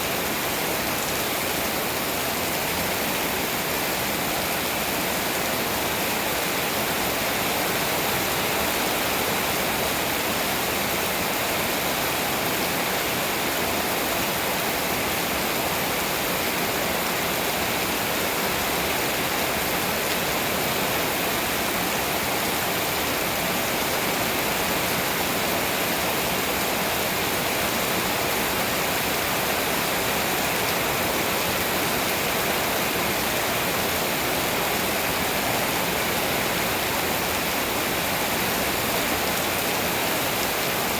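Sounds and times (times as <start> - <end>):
heavy rain pouring: 0.0 - 40.9.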